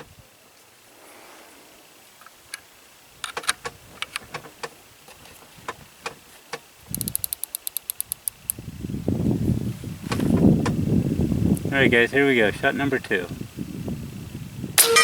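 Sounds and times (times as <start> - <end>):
quick run of clicks: 6.9 - 8.6
air rifle handling clicks: 7.0 - 8.6.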